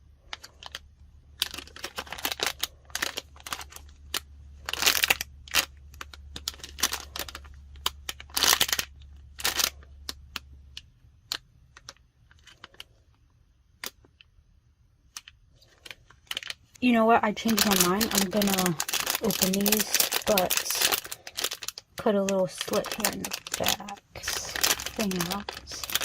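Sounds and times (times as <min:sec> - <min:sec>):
plastic wrapping crinkling: 0:00.2 - 0:14.2, 0:15.1 - 0:26.0.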